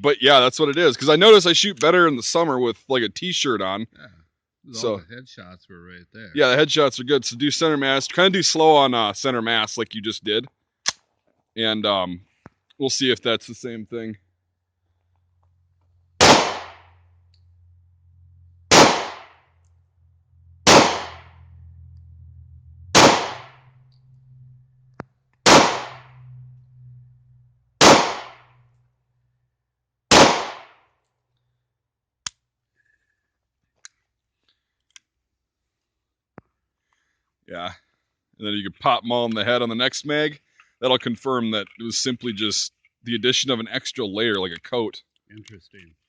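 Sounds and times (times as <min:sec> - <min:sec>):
pistol shots: 0:16.2 - 0:16.8, 0:18.7 - 0:19.3, 0:20.7 - 0:21.3, 0:23.0 - 0:23.6, 0:25.4 - 0:26.1, 0:27.8 - 0:28.4, 0:30.1 - 0:30.8.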